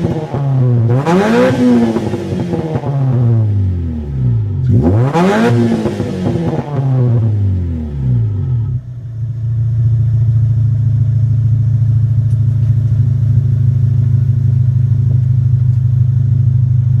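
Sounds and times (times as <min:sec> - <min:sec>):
engine idling with deep note: 0:07.3 - 0:17.0.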